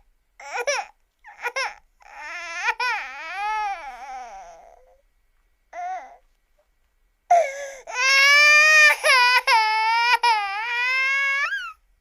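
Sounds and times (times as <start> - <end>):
baby crying: 0.4 - 5.0, 5.8 - 6.2, 7.3 - 11.8.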